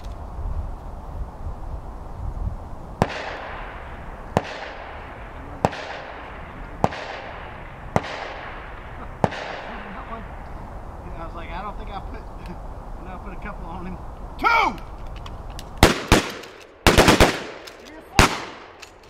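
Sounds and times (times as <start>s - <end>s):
shotgun shots echoing: 3.0s - 10.0s, 15.8s - 18.8s.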